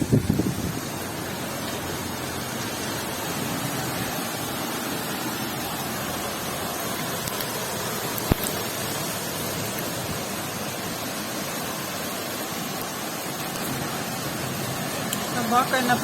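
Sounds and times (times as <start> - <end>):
wind buffeting microphone: 0.0 - 1.4
heavy rain hissing: 0.0 - 16.0.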